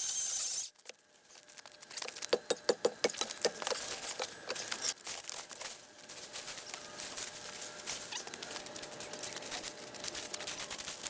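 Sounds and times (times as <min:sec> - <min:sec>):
dry twigs and leaves crackling: 0:03.2 - 0:11.0.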